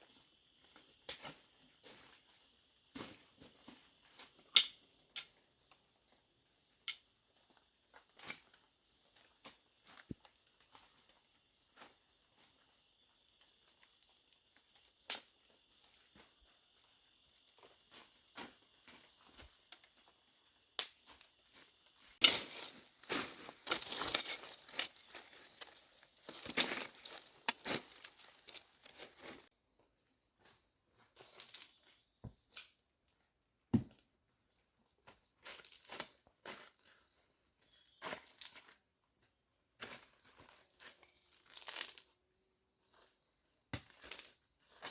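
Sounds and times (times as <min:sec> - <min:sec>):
insects trilling: 0:00.0 - 0:44.9
sharp knocks: 0:33.8 - 0:34.0.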